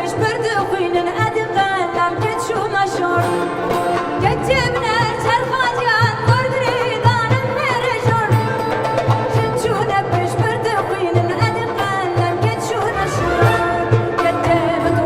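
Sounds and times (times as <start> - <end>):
folk melody with vibrato: 0.0 - 15.0
person singing: 9.4 - 15.0.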